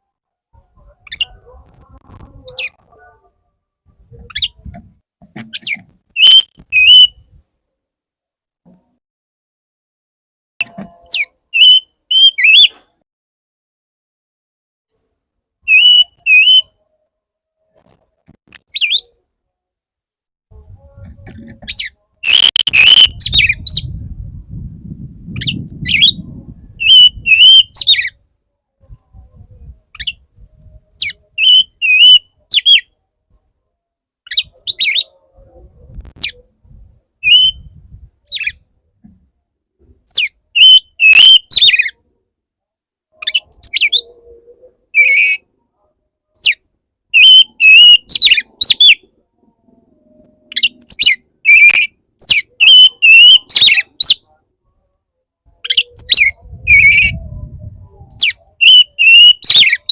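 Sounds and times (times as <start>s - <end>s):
bird singing chirps and whistles: 5.6s - 7.2s, 11.0s - 12.8s, 15.7s - 16.8s, 21.7s - 23.9s, 25.4s - 28.2s, 29.9s - 30.2s, 30.9s - 32.9s, 34.3s - 35.1s, 37.2s - 37.7s, 40.1s - 41.9s, 46.4s - 46.6s, 47.2s - 49.0s, 50.6s - 54.2s, 55.6s - 57.4s, 58.1s - 59.9s.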